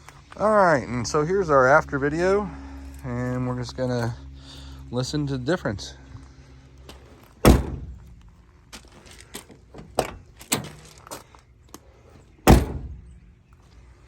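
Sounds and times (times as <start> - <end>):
car door clicks: 7.4 - 8.0
car door slamming shut: 7.4 - 8.2, 12.5 - 13.1.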